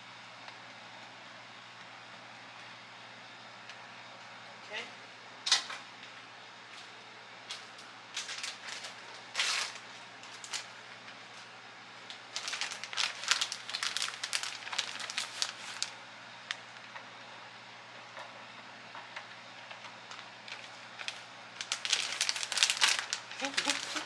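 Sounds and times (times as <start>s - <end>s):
plastic bag crinkling: 8.2s - 10.7s, 12.2s - 16.6s, 20.1s - 24.0s.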